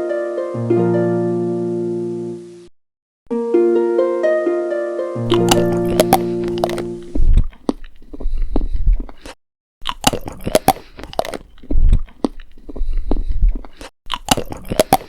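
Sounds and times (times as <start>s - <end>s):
crunchy food being chewed: 5.3s - 15.0s.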